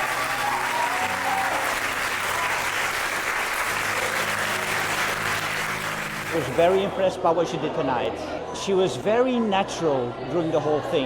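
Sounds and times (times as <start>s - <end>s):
audience applauding: 0.0s - 7.0s
soft music with low notes: 0.0s - 10.0s.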